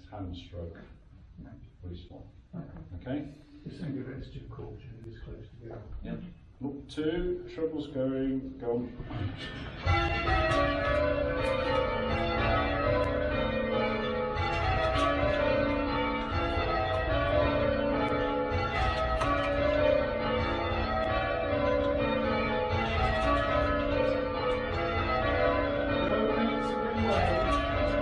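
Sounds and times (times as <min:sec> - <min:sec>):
church bells change ringing: 0:09.7 - 0:28.0.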